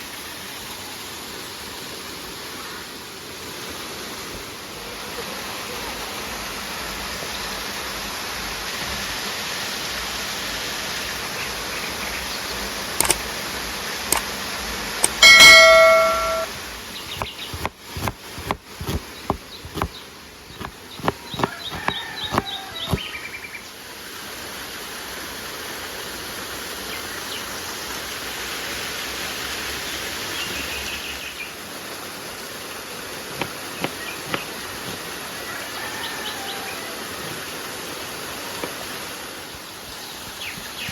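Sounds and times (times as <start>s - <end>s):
loud ringing clang: 15.0s - 16.5s
sharp knocks and clicks: 17.1s - 23.0s
river water rushing: 21.6s - 40.9s.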